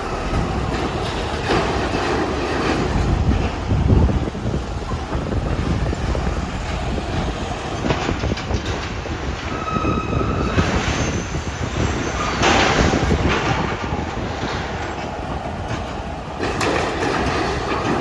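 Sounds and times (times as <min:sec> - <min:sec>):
train rumbling on rails: 0:00.0 - 0:18.0
high wheel squeal: 0:04.4 - 0:14.0.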